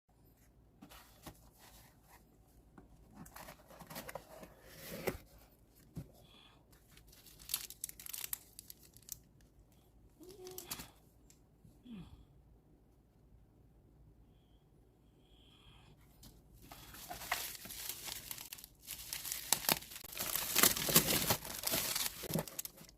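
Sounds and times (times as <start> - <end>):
packaging tearing and crinkling: 7.2 - 9.2, 16.8 - 22.9.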